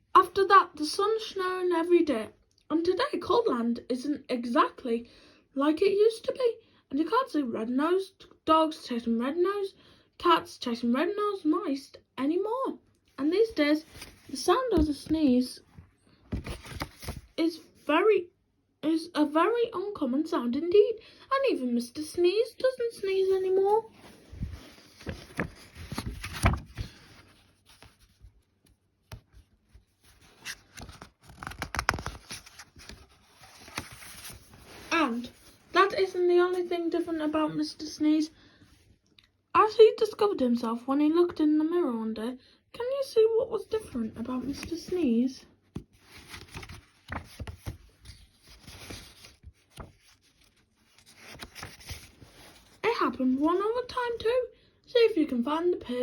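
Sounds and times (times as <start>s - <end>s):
paper pages rustling and turning: 13.4s - 17.4s, 22.8s - 37.4s, 43.8s - 52.8s.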